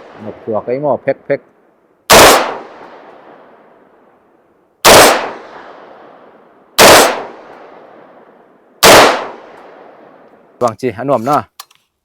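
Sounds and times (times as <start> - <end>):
rifle shots with echo: 2.1 - 3.7, 4.8 - 10.3.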